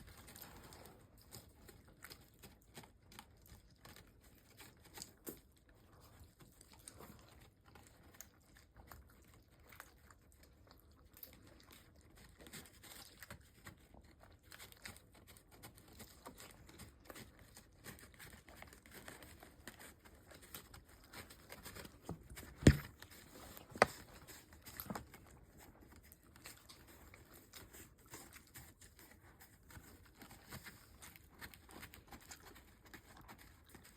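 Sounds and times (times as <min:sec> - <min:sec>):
small taps and clicks: 0:22.1 - 0:22.9
sharp knocks: 0:22.6 - 0:22.9.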